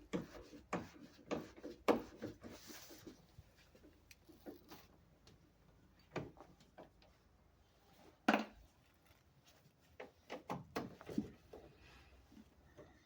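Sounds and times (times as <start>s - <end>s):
clicks and knocks of hand work: 0.0s - 2.5s, 9.9s - 11.8s.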